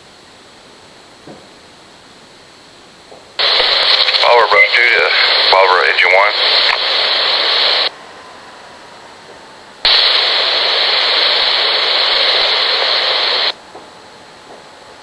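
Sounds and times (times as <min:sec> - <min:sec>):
faint hiss: 0:00.0 - 0:14.0
loud radio static: 0:03.4 - 0:07.9, 0:09.9 - 0:13.6.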